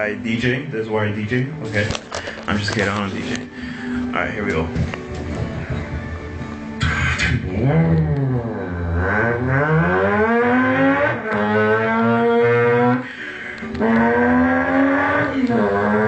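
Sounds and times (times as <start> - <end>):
person imitating a revving engine: 6.8 - 13.0, 13.8 - 16.0.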